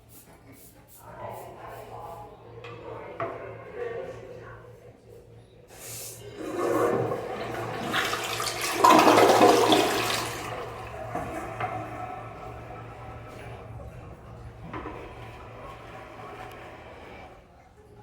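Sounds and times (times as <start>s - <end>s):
toilet flushing: 6.0s - 18.0s
toilet tank refilling: 6.1s - 17.6s.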